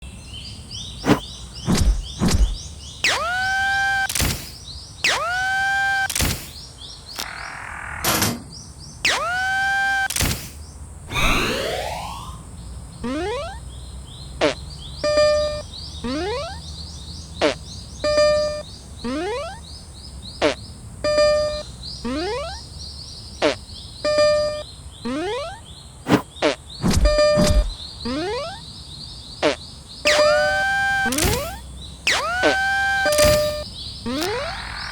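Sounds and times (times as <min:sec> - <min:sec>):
outdoor background hiss: 0:00.1 - 0:03.0, 0:19.6 - 0:25.0
high chirps: 0:01.0 - 0:08.1, 0:09.0 - 0:13.7, 0:14.4 - 0:16.7, 0:17.4 - 0:19.6, 0:20.4 - 0:22.7, 0:23.4 - 0:25.7, 0:26.4 - 0:28.7, 0:29.4 - 0:34.9
sharp click: 0:01.0 - 0:08.5, 0:09.1 - 0:11.5, 0:29.4 - 0:34.5
rising squeaky glide: 0:11.1 - 0:12.4, 0:30.1 - 0:34.9.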